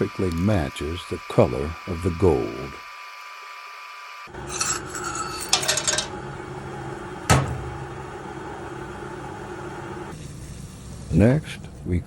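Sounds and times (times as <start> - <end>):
small metal objects clinking: 4.5 - 6.1.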